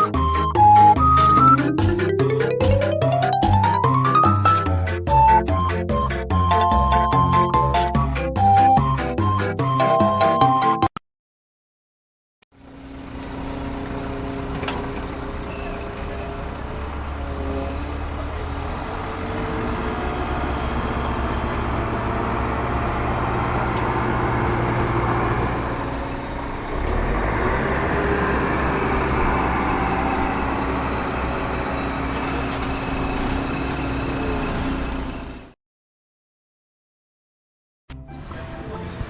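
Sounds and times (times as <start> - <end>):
engine rumbling: 12.5 - 35.6, 37.9 - 39.0.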